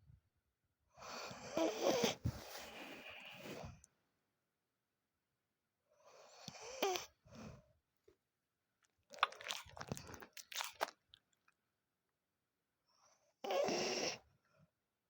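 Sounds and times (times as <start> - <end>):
dog snoring: 13.4 - 14.2.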